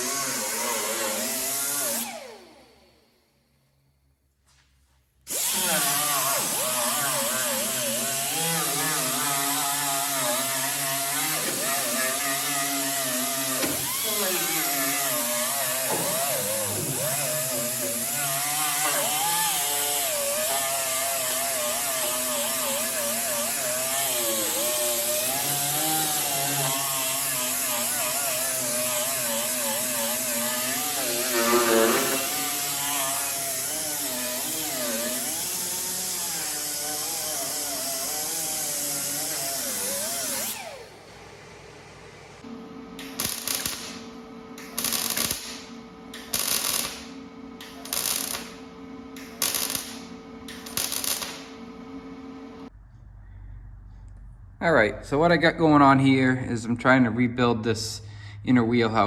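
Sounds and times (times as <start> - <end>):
grinder cutting sheet metal: 0.0 - 2.3, 5.3 - 40.9, 43.0 - 47.1, 47.7 - 48.6, 49.2 - 51.5.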